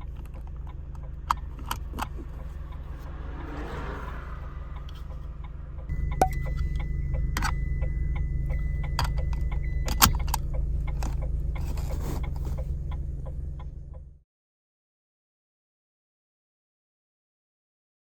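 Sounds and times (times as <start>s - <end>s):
seat belt buckle clicks and rattles: 0.0s - 2.6s, 6.2s - 7.6s, 8.9s - 13.4s
car engine idling: 0.0s - 14.2s.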